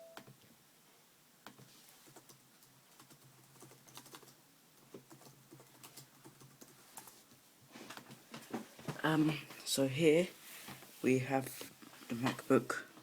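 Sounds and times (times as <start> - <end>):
typing on a laptop keyboard: 1.5 - 7.2.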